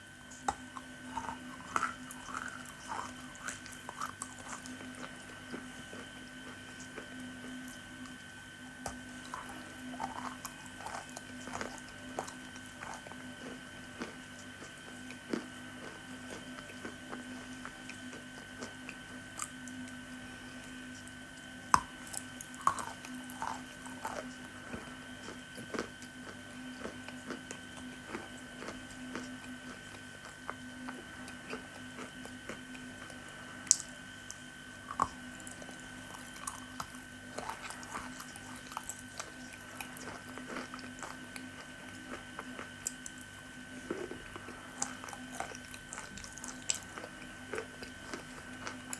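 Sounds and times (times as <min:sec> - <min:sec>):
faint steady hum: 0:00.0 - 0:48.9
person chewing squishy food: 0:00.0 - 0:48.9.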